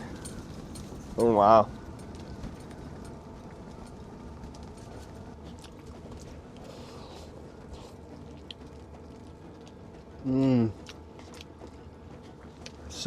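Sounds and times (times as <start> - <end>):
handling clicks and rustles: 0.0 - 6.7
strong wind buffeting hut: 0.0 - 13.0.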